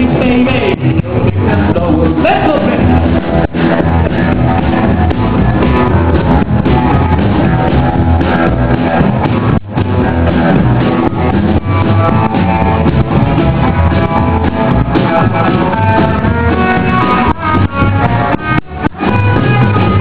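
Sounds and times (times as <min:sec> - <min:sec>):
electric guitar melody: 0:00.0 - 0:20.0
rockabilly band instrumental: 0:00.0 - 0:20.0.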